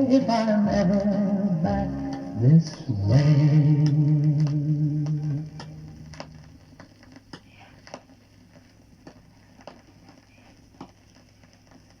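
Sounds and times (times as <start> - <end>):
low steady hum: 0.0 - 12.0
vinyl record clicks and pops: 0.0 - 12.0.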